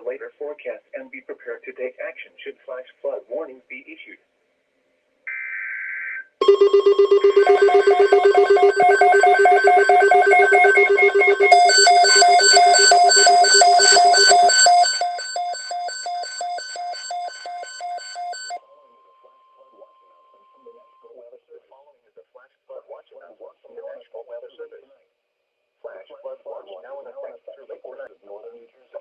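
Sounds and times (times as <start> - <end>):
digital alert data tones: 6.4 - 18.6
pulsing electronic alert beeps: 6.4 - 18.6.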